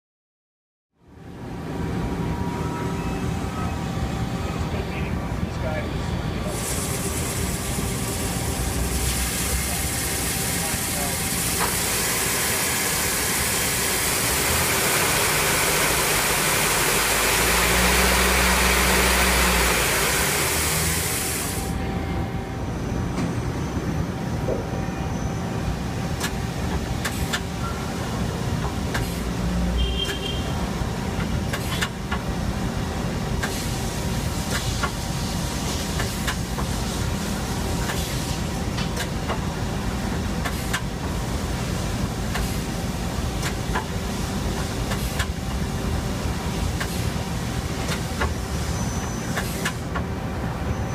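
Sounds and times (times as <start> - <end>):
lathe hissing: 6.5 - 21.8.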